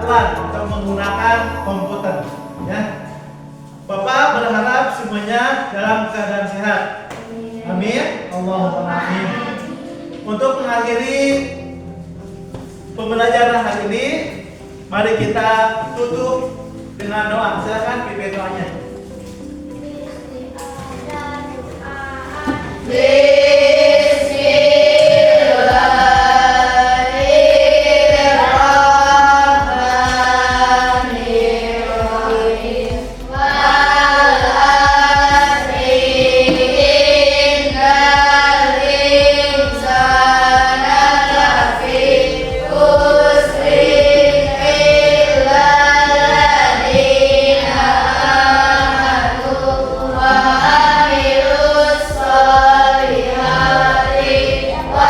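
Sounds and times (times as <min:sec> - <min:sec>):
children chanting in unison: 0:08.7 - 0:11.5, 0:20.0 - 0:55.0.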